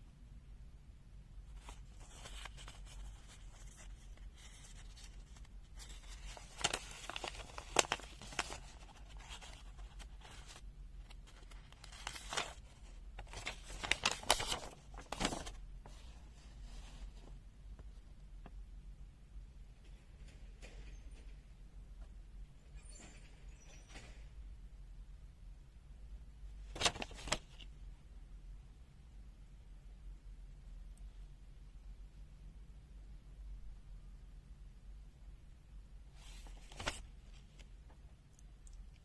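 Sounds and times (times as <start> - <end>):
paper crinkling: 1.5 - 17.4, 26.6 - 27.7, 36.2 - 37.7
paper pages rustling: 1.5 - 17.4, 26.6 - 27.7, 36.2 - 37.7.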